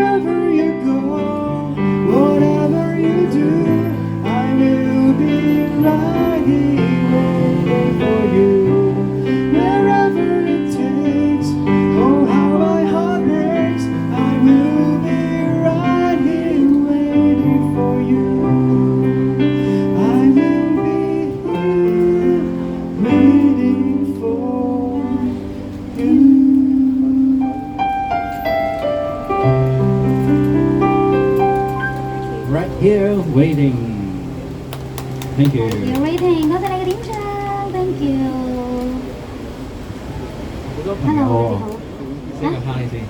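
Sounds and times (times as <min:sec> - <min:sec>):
person singing: 0:00.0 - 0:27.8.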